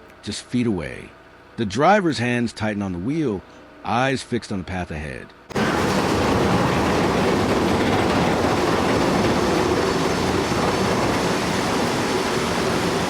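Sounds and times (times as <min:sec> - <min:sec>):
heavy vehicle rumbling and rattling: 0:05.5 - 0:13.0.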